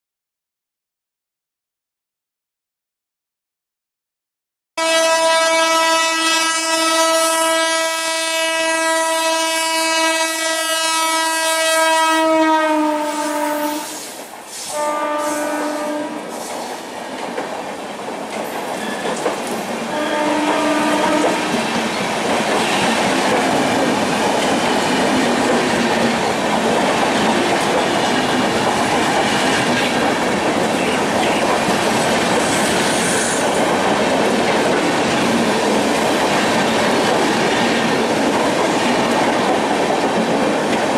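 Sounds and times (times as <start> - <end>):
locomotive horn blasts: 4.8 - 14.0, 14.7 - 16.2, 19.9 - 21.6
train coaches clattering on bridge: 10.7 - 40.9.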